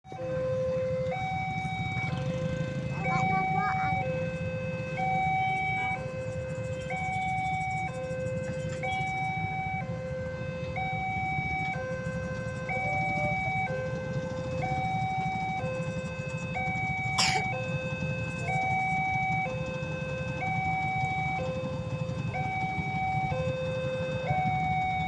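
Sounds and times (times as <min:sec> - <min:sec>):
two-tone level crossing alarm: 0:00.1 - 0:25.0.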